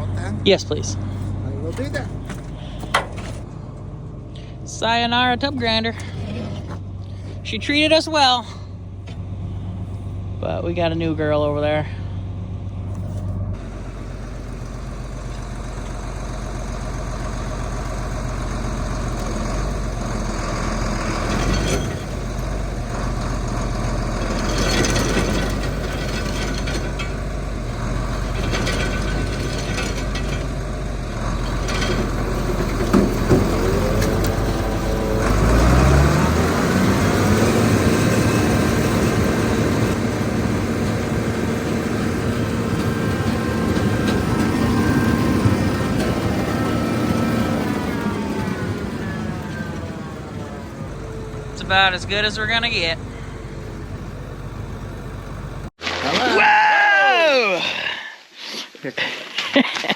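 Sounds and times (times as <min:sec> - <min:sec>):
heavy machinery engine revving: 0:12.8 - 0:55.8.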